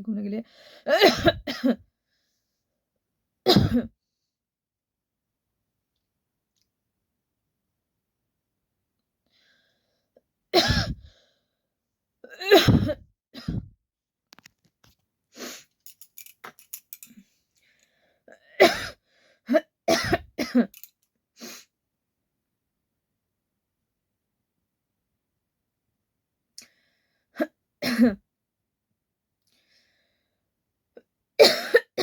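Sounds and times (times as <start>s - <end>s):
woman coughing: 0.9s - 1.8s, 3.5s - 4.0s, 10.6s - 11.1s, 12.3s - 13.7s, 18.6s - 20.8s, 27.8s - 28.2s, 31.4s - 32.0s.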